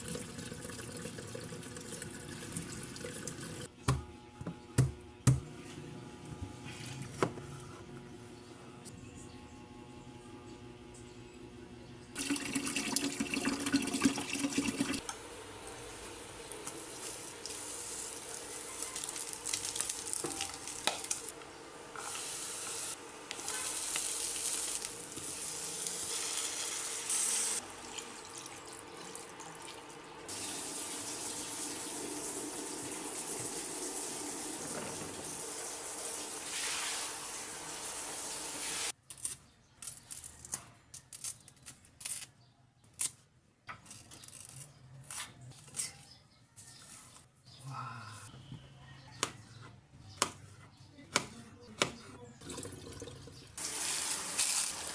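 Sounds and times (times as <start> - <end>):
steady kitchen hiss: 12.2 - 39.0, 53.6 - 54.9.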